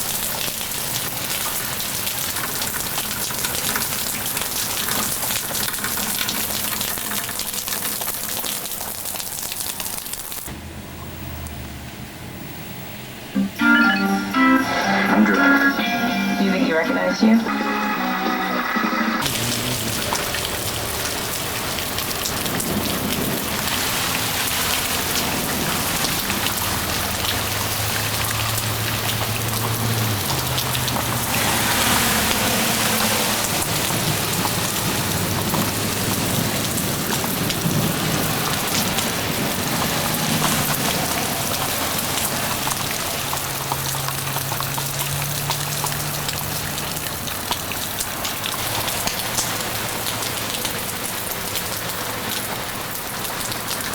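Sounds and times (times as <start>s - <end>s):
heavy rain pouring: 0.0s - 53.9s.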